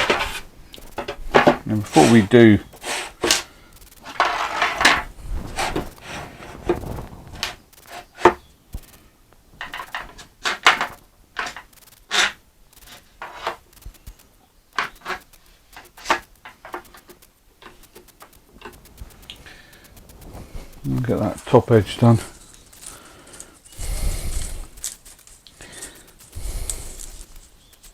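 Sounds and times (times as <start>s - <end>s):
wood scraping: 0.0s - 8.9s, 9.5s - 14.2s, 14.8s - 27.9s.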